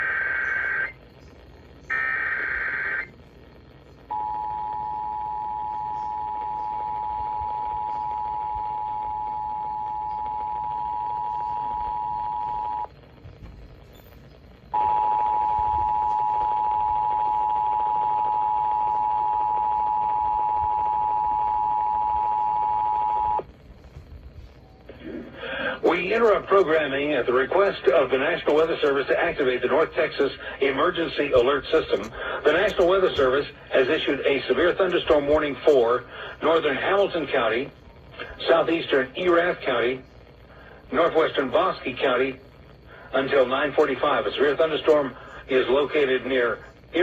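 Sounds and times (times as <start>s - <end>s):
warbling data header bursts: 0.0s - 12.9s, 14.7s - 23.5s.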